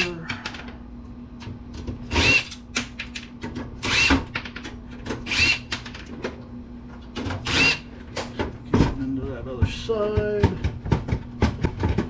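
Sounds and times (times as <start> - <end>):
power drill spinning: 2.1 - 2.5, 3.8 - 4.1, 5.2 - 5.6, 7.4 - 7.9.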